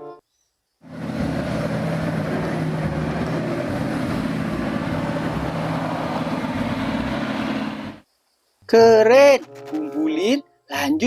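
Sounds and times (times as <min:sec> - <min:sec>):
tank engine running: 0:00.8 - 0:08.0.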